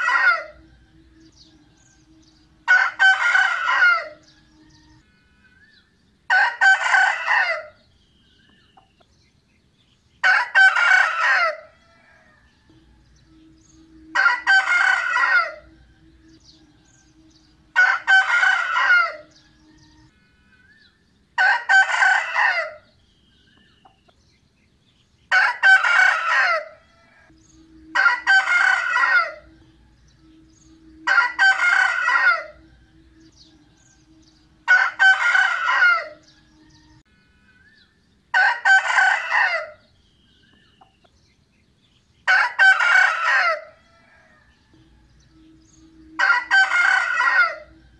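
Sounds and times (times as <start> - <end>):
rooster crowing: 0.0 - 5.7, 6.3 - 7.8, 10.2 - 20.2, 21.4 - 22.9, 25.3 - 37.0, 38.3 - 39.8, 42.2 - 47.9.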